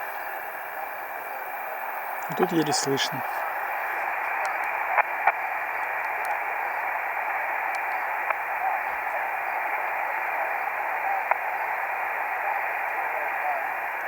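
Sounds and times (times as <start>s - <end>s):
faint radio voice: 0.0s - 4.4s, 7.7s - 14.0s
radio static hiss: 0.0s - 14.0s
sharp radio clicks: 2.0s - 14.0s.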